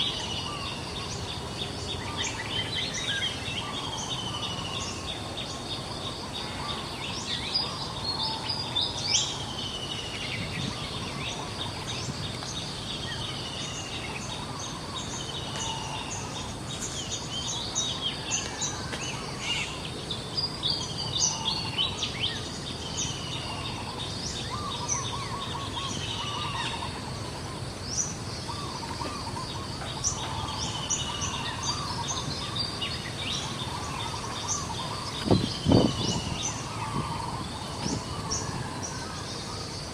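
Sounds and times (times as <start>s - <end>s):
steady background hiss: 0.0s - 39.9s
birds whistling and chirping: 27.9s - 39.8s.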